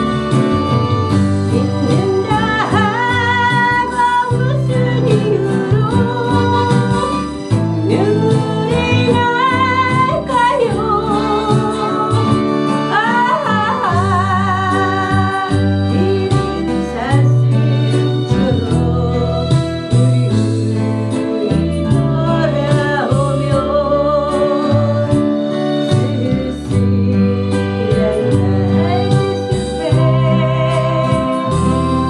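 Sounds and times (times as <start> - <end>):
plucked strings: 0.0 - 32.0
steady bass: 0.0 - 32.0.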